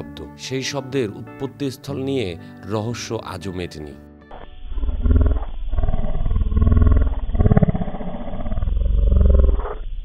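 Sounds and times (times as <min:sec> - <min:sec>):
low rattling growling roar: 0:04.7 - 0:09.8.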